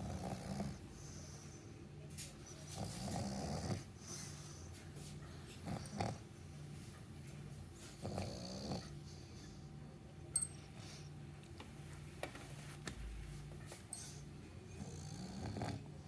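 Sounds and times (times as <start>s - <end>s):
pet snoring: 0.0s - 1.2s, 2.7s - 4.2s, 5.6s - 6.2s, 8.0s - 8.9s, 14.8s - 15.9s.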